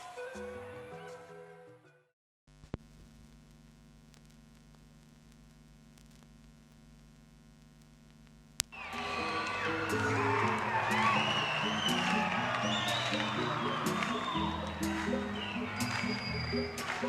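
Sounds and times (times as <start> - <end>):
music: 0.0 - 2.1, 8.8 - 17.0
amplifier mains hum: 2.5 - 8.8
amplifier clicks: 4.1 - 8.7.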